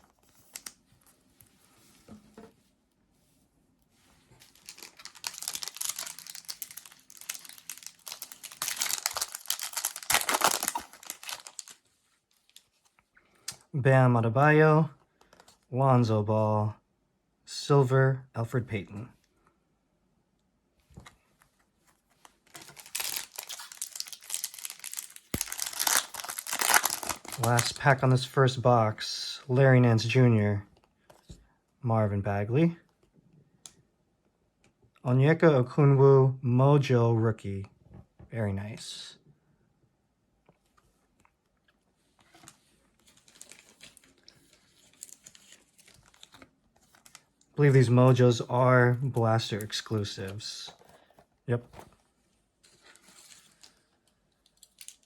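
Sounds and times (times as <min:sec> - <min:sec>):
trading cards rustling: 0:04.3 - 0:12.9, 0:22.2 - 0:27.8, 0:42.3 - 0:52.0, 0:52.6 - 0:55.0
foil wrapper crinkling: 0:04.4 - 0:11.8, 0:22.4 - 0:27.8, 0:43.1 - 0:47.3, 0:54.4 - 0:55.0.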